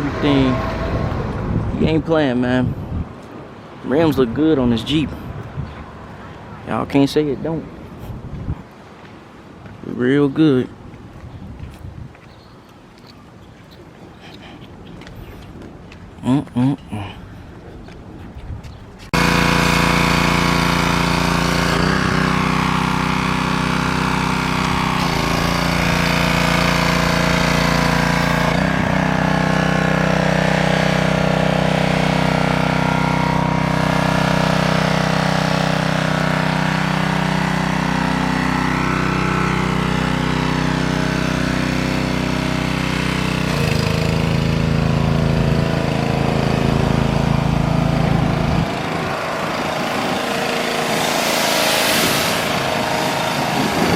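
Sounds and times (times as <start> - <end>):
pressure washer engine running: 19.1 - 53.9.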